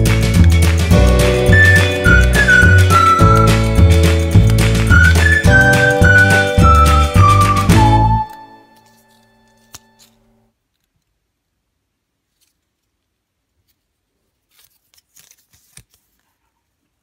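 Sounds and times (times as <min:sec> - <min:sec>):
small clicks and crinkles: 0:08.7 - 0:11.3, 0:12.3 - 0:16.7.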